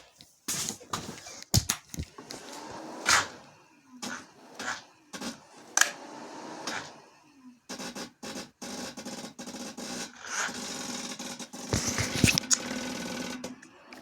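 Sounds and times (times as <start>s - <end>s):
quad engine cranking: 4.0s - 14.0s.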